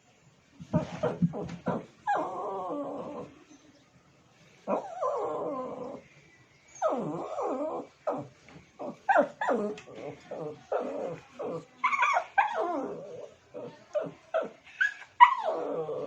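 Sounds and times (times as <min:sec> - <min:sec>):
dog whining: 0:00.8 - 0:03.4, 0:04.7 - 0:06.0, 0:06.7 - 0:16.0
dog yipping: 0:06.8 - 0:09.8, 0:13.6 - 0:16.0.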